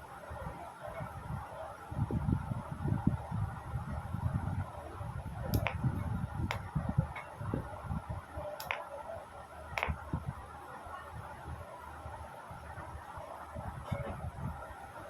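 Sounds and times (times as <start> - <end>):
radio speaker hiss: 4.8 - 11.0
sharp clicks: 5.5 - 5.9, 6.5 - 6.7, 8.6 - 8.9, 9.8 - 10.0.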